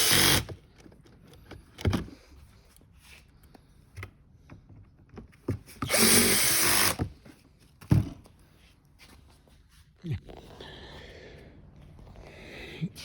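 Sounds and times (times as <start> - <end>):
electric screwdriver running: 0.0 - 0.5, 5.8 - 7.0.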